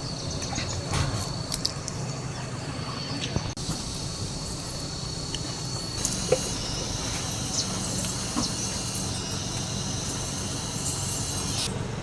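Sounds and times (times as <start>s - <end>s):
motor low hum: 0.0s - 12.0s
high buzz: 3.8s - 12.0s.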